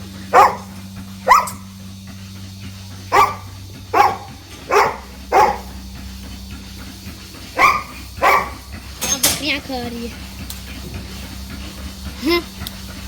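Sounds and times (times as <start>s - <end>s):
steady low hum: 0.0s - 13.0s
dog barking: 0.3s - 1.6s, 3.1s - 5.8s, 7.6s - 8.7s.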